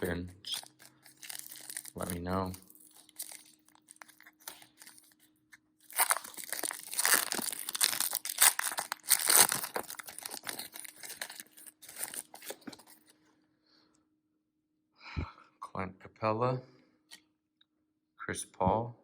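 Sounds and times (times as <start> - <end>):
card packs being torn open: 0.0 - 5.2, 5.8 - 13.0
wrappers crinkling: 0.0 - 13.0.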